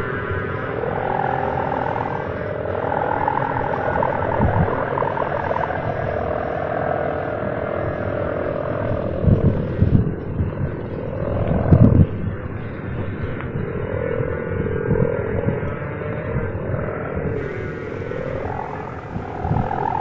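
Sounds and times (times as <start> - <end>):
kite hummer droning buzz: 0.0 - 20.0
low rumbles: 17.3 - 20.0.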